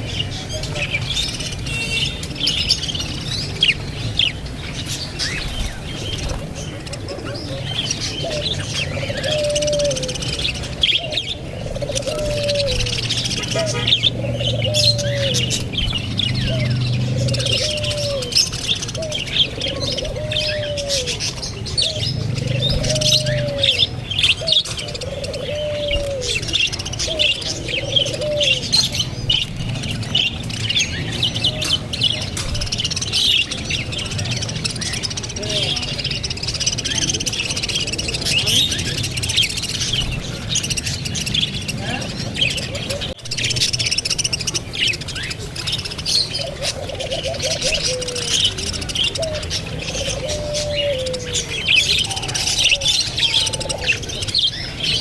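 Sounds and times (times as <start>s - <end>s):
parrots chirping and twittering: 0.0s - 55.0s
low rising and falling call: 7.0s - 32.3s.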